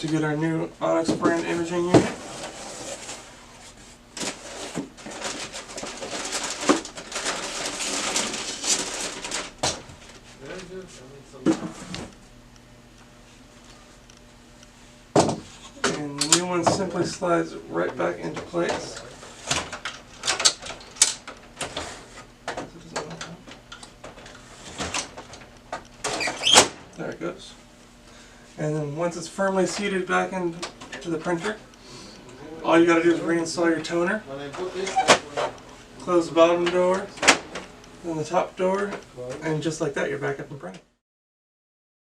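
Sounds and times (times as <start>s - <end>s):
packaging rustling and crinkling: 4.2s - 10.7s.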